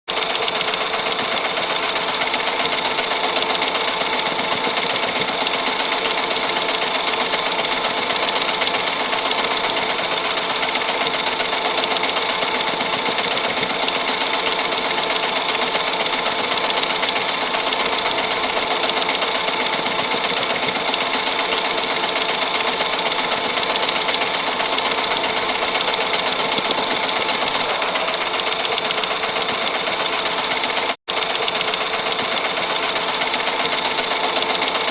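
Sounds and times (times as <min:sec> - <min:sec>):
film projector whirring: 0:00.1 - 0:34.9.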